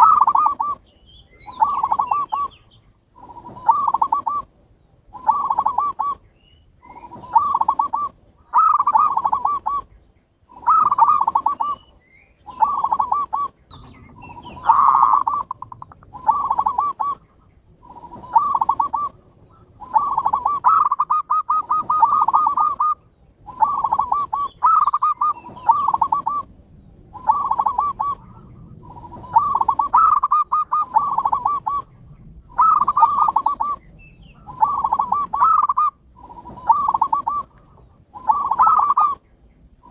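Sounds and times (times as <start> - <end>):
doves cooing: 0.0 - 39.9.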